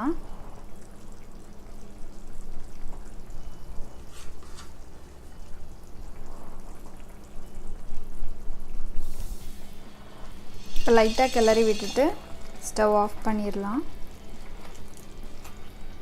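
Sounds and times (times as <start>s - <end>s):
gravy bubbling in a pan: 0.0s - 16.0s
steady low hum: 5.1s - 16.0s.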